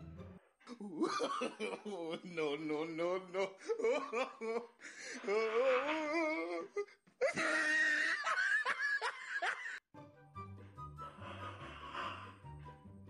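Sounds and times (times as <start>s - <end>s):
loud laughing: 0.8s - 2.2s, 6.1s - 9.8s.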